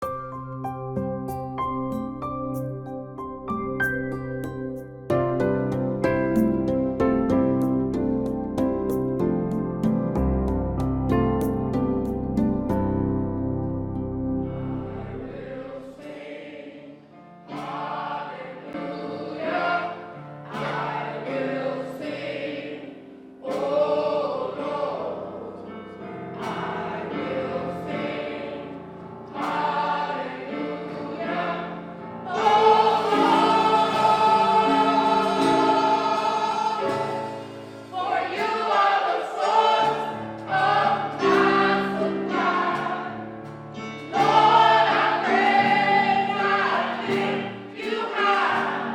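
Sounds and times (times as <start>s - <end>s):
choir singing gospel: 13.9s - 48.9s.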